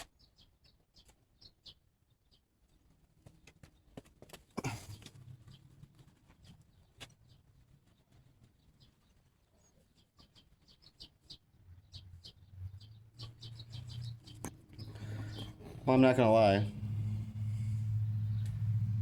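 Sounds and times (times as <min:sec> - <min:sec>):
low hum: 0:12.2 - 0:19.0.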